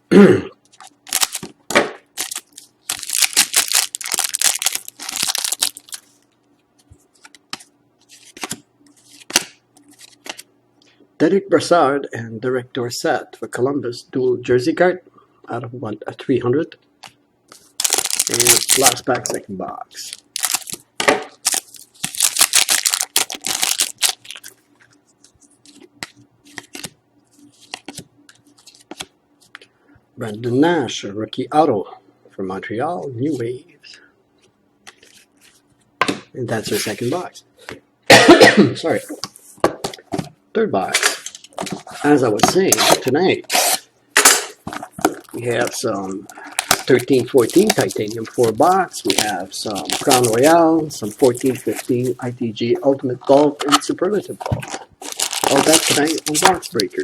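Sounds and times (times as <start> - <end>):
plastic wrapper crinkling and tearing: 0.7 - 1.5, 2.2 - 6.2, 17.5 - 19.4, 20.0 - 20.8, 21.4 - 25.9, 44.7 - 52.2, 53.6 - 57.0
cards clicking and rustling: 0.7 - 1.6, 2.2 - 6.0, 6.8 - 10.5, 17.0 - 19.4, 20.0 - 20.8, 21.4 - 24.6, 25.2 - 27.0, 27.6 - 29.6, 46.5 - 52.2, 53.5 - 57.0.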